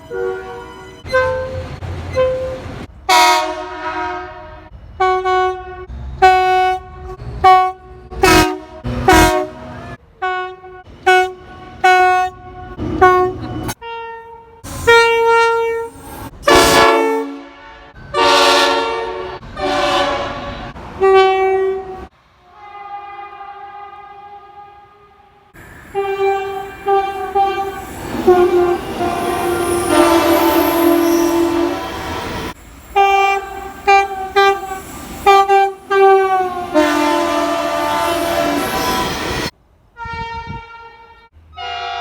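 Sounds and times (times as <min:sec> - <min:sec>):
locomotive air horn blasts: 0:00.1 - 0:42.0.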